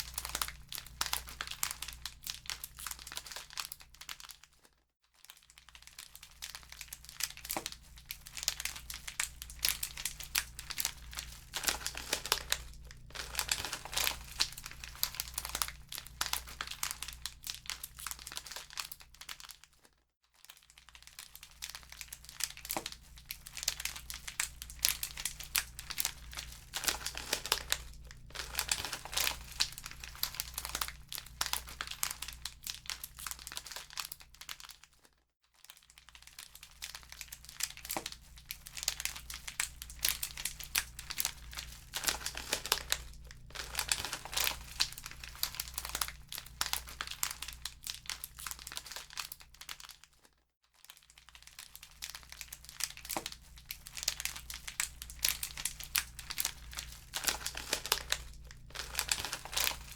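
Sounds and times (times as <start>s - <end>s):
wood fire crackling: 9.1s - 17.3s, 23.5s - 32.0s, 39.6s - 47.2s, 53.2s - 59.9s.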